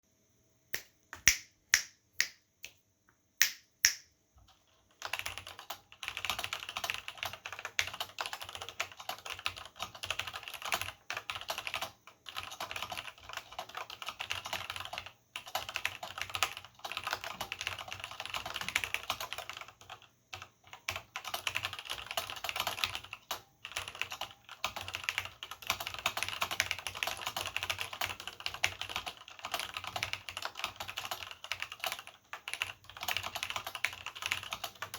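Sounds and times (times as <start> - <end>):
typing on mechanical keyboard: 4.4 - 34.9.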